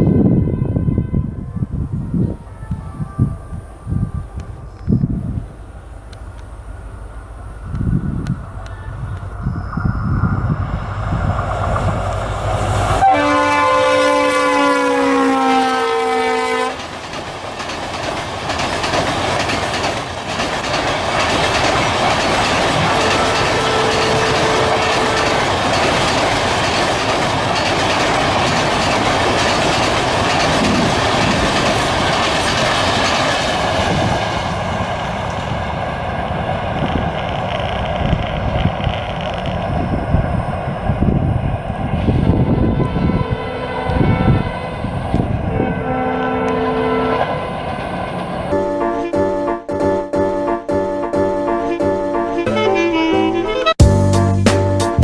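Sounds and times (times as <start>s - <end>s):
locomotive horn: 0.0s - 4.9s, 12.4s - 16.9s, 22.7s - 26.2s, 42.4s - 47.5s, 48.5s - 49.8s, 51.4s - 53.8s
train rushing past: 0.0s - 49.8s
wheels clacking over rail joints: 4.7s - 48.7s.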